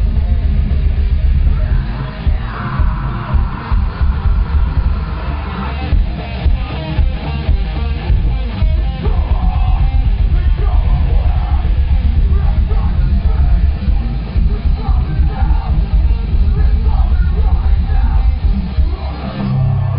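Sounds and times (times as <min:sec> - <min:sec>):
distorted guitar: 0:00.0 - 0:19.9
heavy rock band playing: 0:00.0 - 0:19.9
pounding bass and drums: 0:00.0 - 0:19.9
person yelling vocals: 0:01.6 - 0:05.7.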